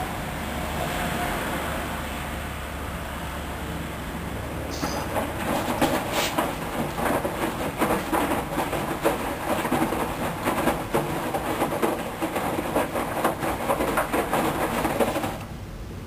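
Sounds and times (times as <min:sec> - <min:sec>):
washing machine drum turning: 0:04.6 - 0:15.5
wet towels knocking in drum: 0:04.7 - 0:15.4.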